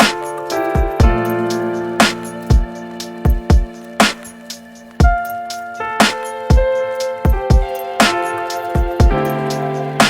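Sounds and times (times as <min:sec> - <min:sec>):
steady drum beat: 0:00.0 - 0:10.0.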